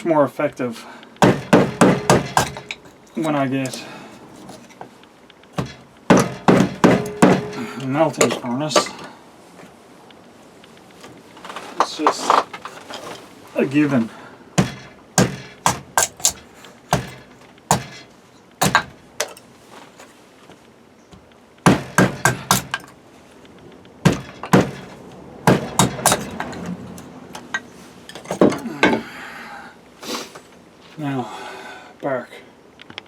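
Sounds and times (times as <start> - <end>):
sharp knocks and cracks: 1.2 - 2.9, 5.4 - 7.7, 14.6 - 19.5, 21.1 - 23.0, 23.8 - 29.0.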